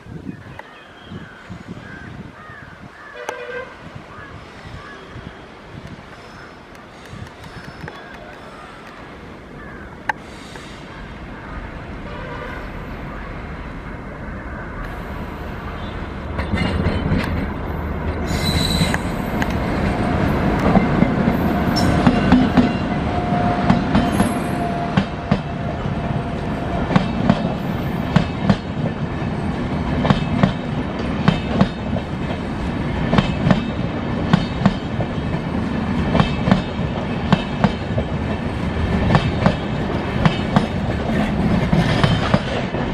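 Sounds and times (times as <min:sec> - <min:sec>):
train wheels clickety-clack: 0:15.8 - 0:42.9.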